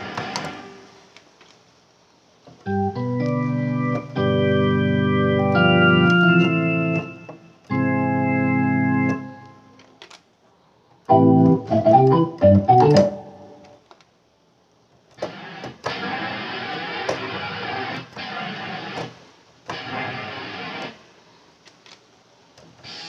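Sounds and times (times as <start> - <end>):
synthesizer organ chords: 2.6 - 9.8, 11.1 - 13.8
quick synthesizer notes: 11.1 - 13.6.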